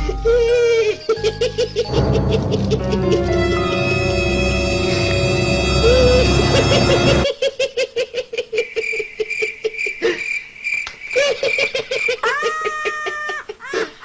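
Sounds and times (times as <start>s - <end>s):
high squeal: 2.0s - 7.3s.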